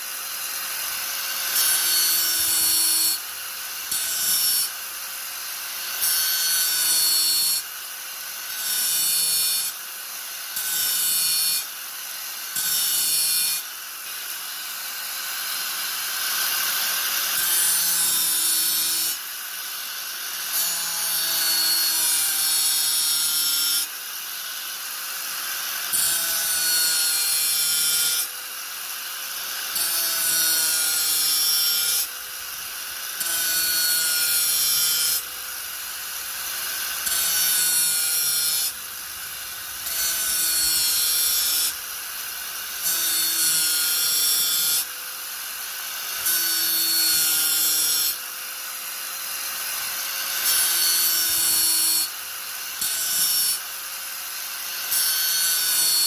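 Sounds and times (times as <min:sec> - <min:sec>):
grinder disc cutting: 0:25.8 - 0:48.2.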